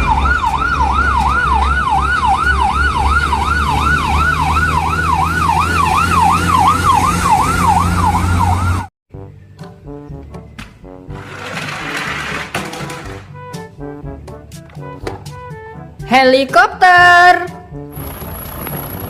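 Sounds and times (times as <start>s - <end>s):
siren wailing: 0.0s - 8.9s.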